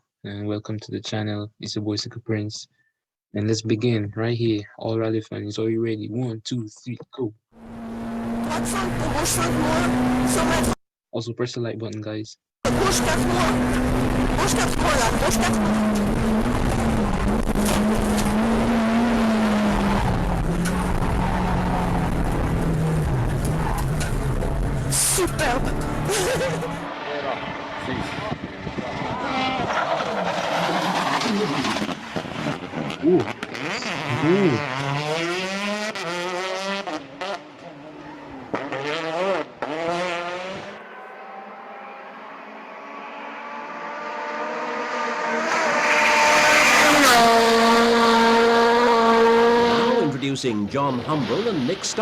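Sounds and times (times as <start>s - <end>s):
rally car engine running hard: 7.6s - 10.8s, 12.7s - 50.1s.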